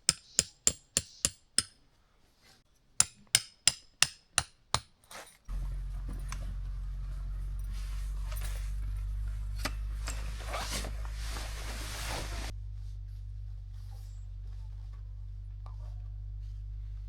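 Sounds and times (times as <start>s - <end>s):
rustling and scraping handling: 2.0s - 2.9s, 5.0s - 17.0s
steady low rumble: 5.5s - 17.0s.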